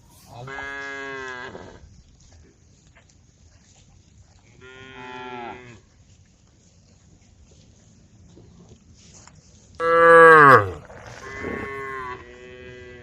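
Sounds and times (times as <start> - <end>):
cow mooing: 9.8 - 13.0.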